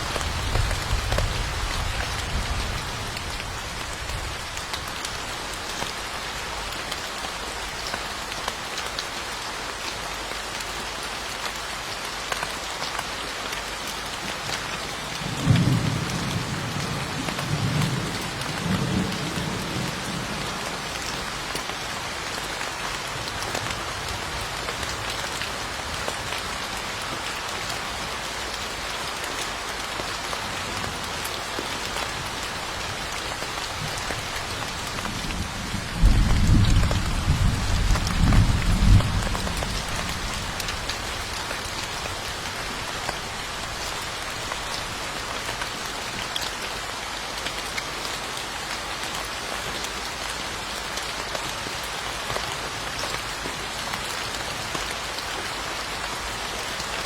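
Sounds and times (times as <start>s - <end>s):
rain falling: 0.0s - 57.0s
thunder rumbling: 34.8s - 40.9s.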